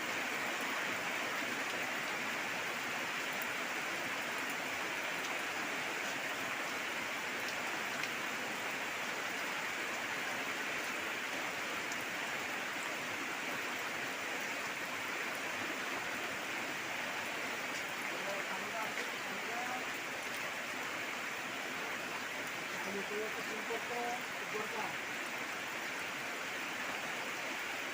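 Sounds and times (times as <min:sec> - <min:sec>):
steady rain hiss: 0:00.0 - 0:27.9
faint raindrop ticks: 0:01.6 - 0:02.2, 0:04.3 - 0:10.0, 0:11.8 - 0:12.1, 0:17.5 - 0:20.4.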